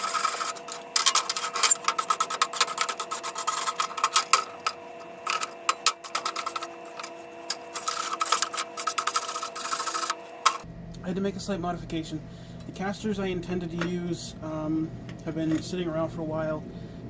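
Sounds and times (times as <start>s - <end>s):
metal scraping and clicking: 0.0s - 10.7s
faint steady hum: 0.0s - 17.0s.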